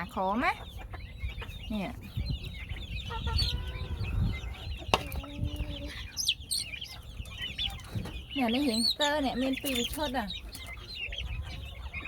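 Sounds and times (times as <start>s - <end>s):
chicks peeping: 0.0s - 12.0s
hen clucking: 0.0s - 12.0s.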